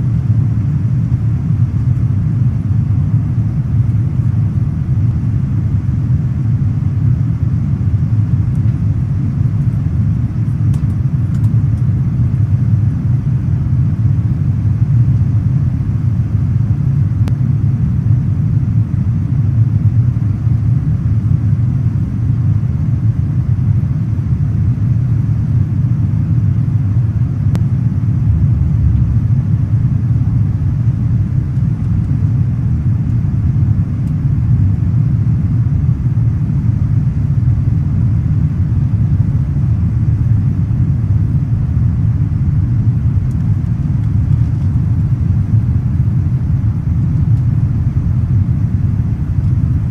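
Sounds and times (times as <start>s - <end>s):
airliner cabin engine rumble: 0.0s - 49.9s.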